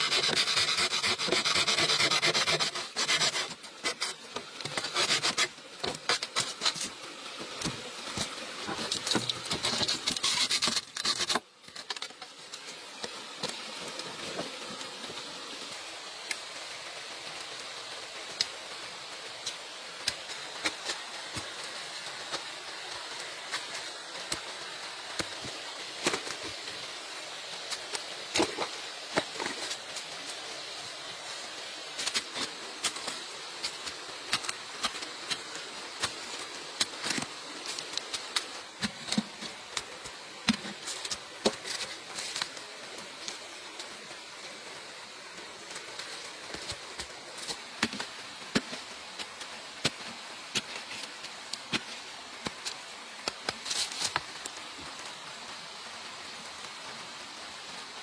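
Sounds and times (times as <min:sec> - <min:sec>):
outdoor ambience hiss: 0:00.0 - 0:58.0.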